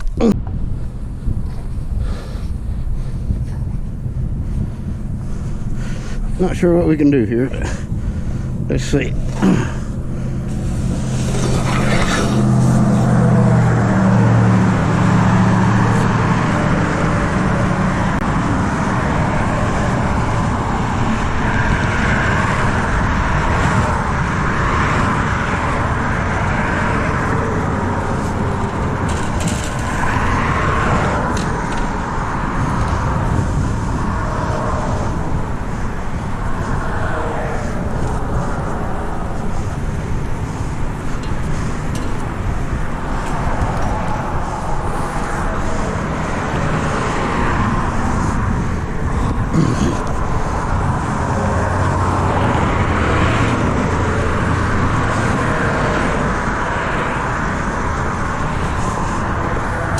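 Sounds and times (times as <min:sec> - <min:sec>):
road traffic noise: 0:00.0 - 0:59.9
vehicle engine passing: 0:00.0 - 0:59.9.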